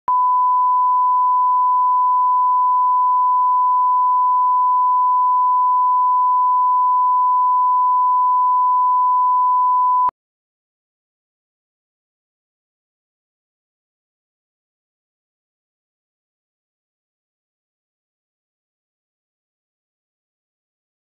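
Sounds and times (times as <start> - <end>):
sine-wave test tone: 0.1 - 10.1.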